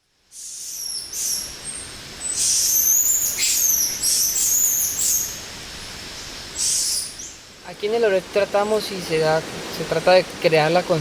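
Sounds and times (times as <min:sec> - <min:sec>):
birds whistling and chirping: 0:00.4 - 0:05.5, 0:06.2 - 0:07.4.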